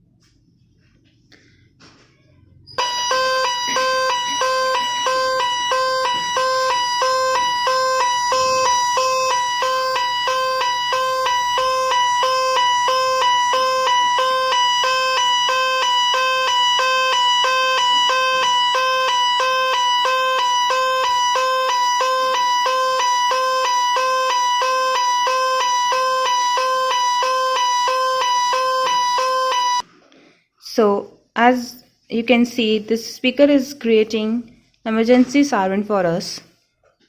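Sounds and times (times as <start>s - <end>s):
two-tone electronic siren: 2.8s - 29.8s.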